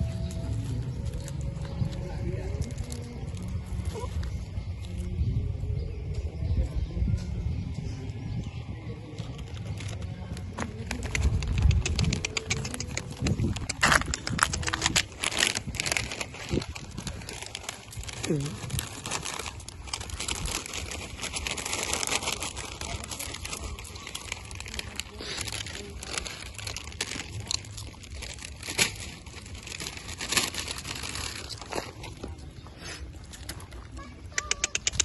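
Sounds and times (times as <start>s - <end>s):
crinkling and rustling: 9.2s - 34.1s
sharp clicks: 11.1s - 15.0s, 34.3s - 35.0s.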